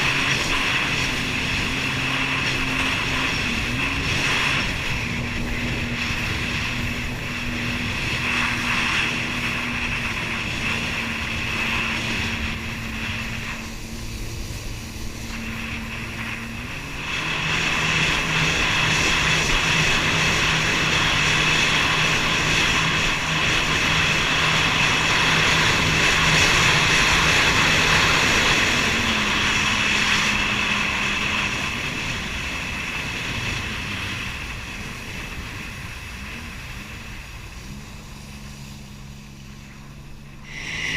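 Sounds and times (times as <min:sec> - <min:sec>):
jet ski engines: 0:00.0 - 0:40.9
wind and water spray rushing: 0:00.0 - 0:40.9.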